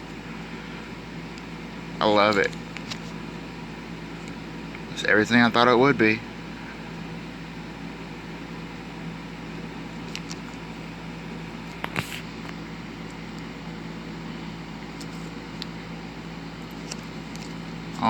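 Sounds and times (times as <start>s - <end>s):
low machine hum: 0.0s - 18.0s.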